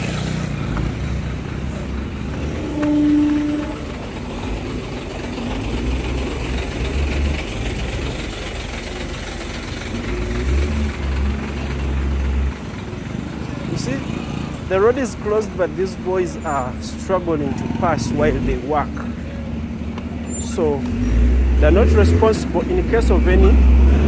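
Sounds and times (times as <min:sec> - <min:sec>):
vehicle engines and road noise: 0:00.0 - 0:24.0
car horn honk: 0:02.4 - 0:04.2.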